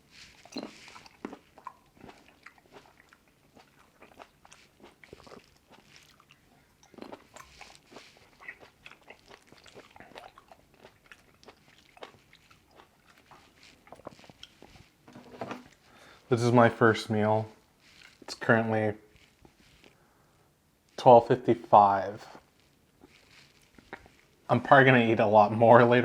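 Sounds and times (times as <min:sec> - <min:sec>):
crunchy chewing of grapes: 0:00.0 - 0:16.2, 0:17.7 - 0:20.0, 0:21.8 - 0:25.0
wet mouth clicks: 0:00.4 - 0:14.8, 0:23.0 - 0:24.3.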